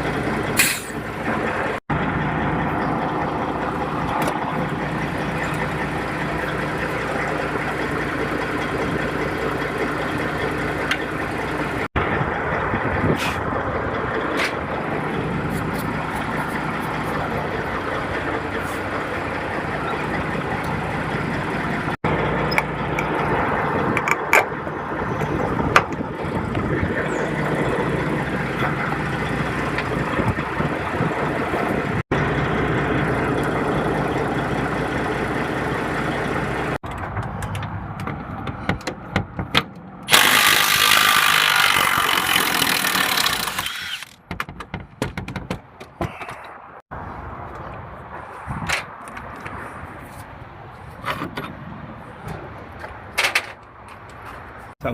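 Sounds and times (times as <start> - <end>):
diesel engine idling: 0.0 - 37.1.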